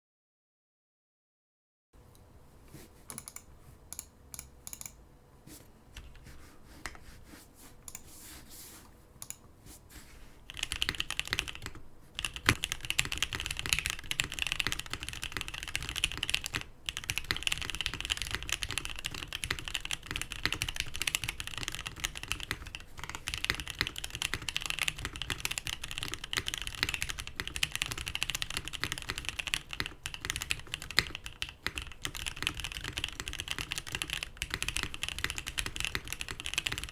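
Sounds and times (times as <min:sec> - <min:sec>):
mechanical keyboard typing: 0:03.1 - 0:05.0, 0:10.5 - 0:36.9.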